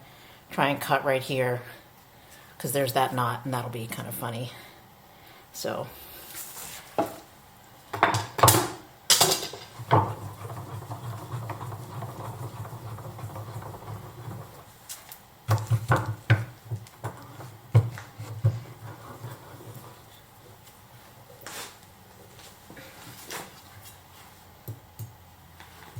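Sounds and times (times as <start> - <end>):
steady low hum: 7.2 - 25.9
wood and hand tools clattering: 8.0 - 14.7, 15.5 - 20.1.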